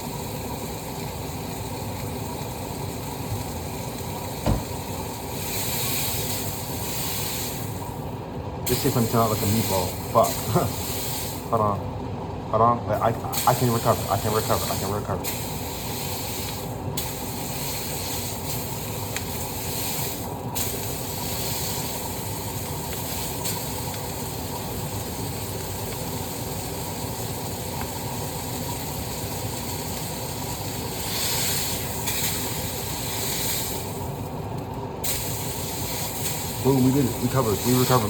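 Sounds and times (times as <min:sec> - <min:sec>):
patty sizzling in a hot pan: 0:00.0 - 0:11.8, 0:12.9 - 0:38.0.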